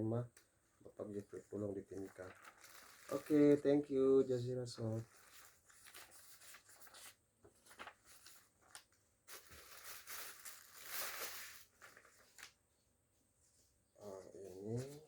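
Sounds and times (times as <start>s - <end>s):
packaging rustling and crinkling: 1.1s - 3.9s, 4.8s - 12.6s.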